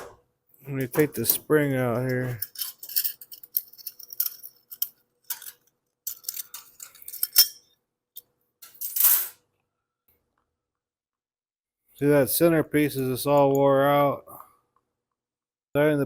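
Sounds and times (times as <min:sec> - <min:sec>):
spring and housing clicking and clinking: 0:02.1 - 0:09.2.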